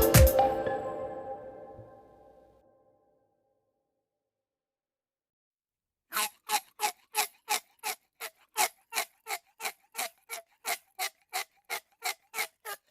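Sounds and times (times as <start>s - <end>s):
short crunching scraping strokes: 6.1s - 12.9s.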